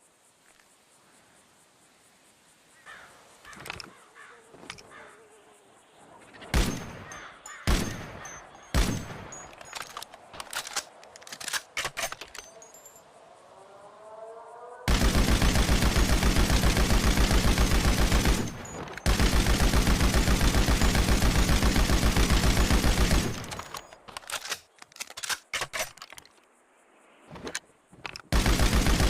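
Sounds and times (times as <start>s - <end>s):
single gunshots: 6.5s - 9.3s
automatic gunfire: 7.7s - 9.2s, 14.9s - 23.7s, 28.3s - 29.0s.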